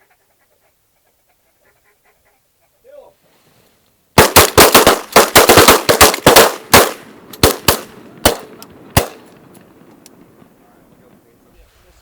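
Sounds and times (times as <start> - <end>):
shotgun blasts: 4.2 - 9.4.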